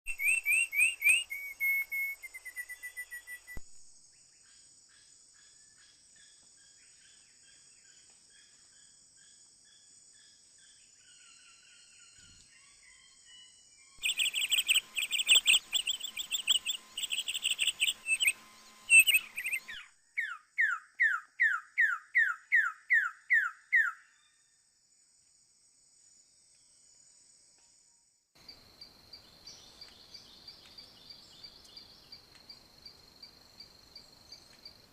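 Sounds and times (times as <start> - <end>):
songbird chirping and singing: 0.1 - 3.6, 4.2 - 24.5, 29.1 - 34.8
high insect buzz: 14.0 - 19.9.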